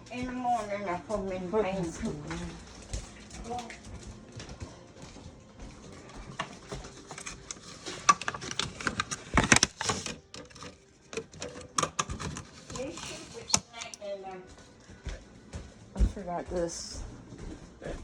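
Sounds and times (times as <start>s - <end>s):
kitchen items clicking and knocking: 6.3s - 14.0s.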